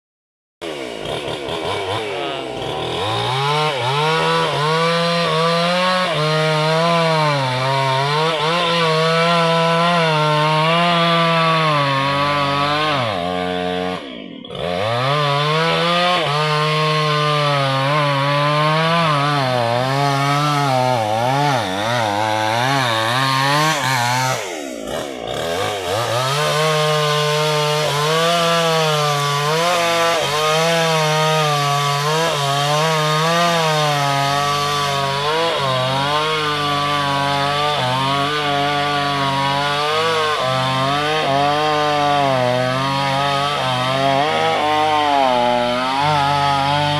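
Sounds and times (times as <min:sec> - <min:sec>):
chainsaw cutting wood: 0:00.6 - 0:46.9.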